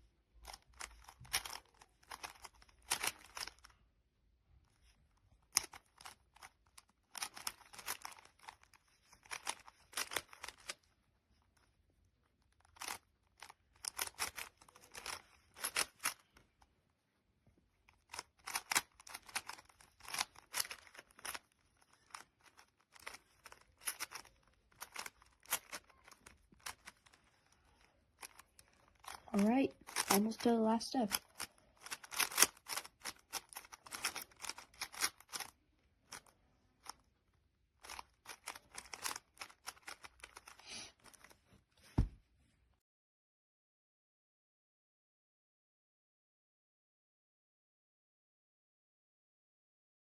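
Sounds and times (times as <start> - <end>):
speed cube plastic clacking: 0.4 - 3.7, 4.7 - 11.7, 12.4 - 16.6, 17.9 - 37.1, 37.8 - 41.4.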